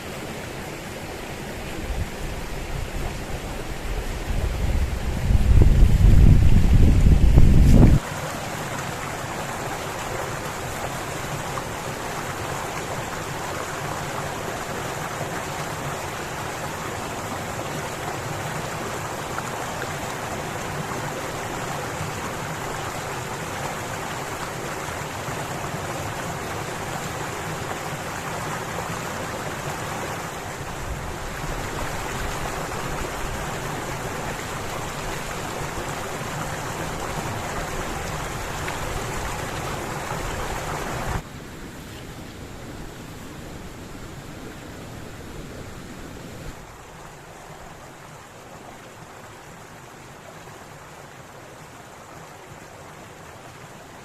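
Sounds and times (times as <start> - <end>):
strong wind through pine trees: 0.0 - 54.0.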